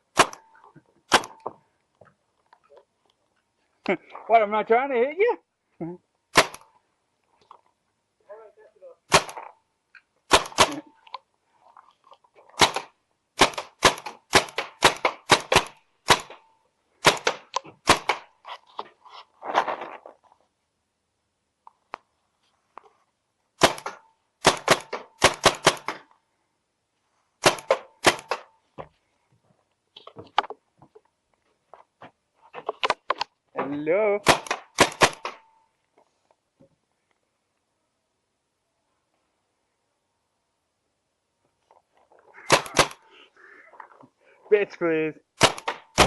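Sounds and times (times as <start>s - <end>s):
paintball marker firing: 0.1s - 0.5s, 1.1s - 1.5s, 6.3s - 6.7s, 9.1s - 9.5s, 10.3s - 10.9s, 12.6s - 18.3s, 23.6s - 26.1s, 27.4s - 28.5s, 34.2s - 35.5s, 42.4s - 43.0s, 45.4s - 46.0s.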